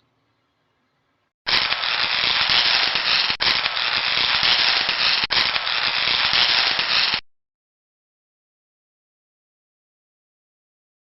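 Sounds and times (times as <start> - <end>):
static crackling: 1.5 - 7.2.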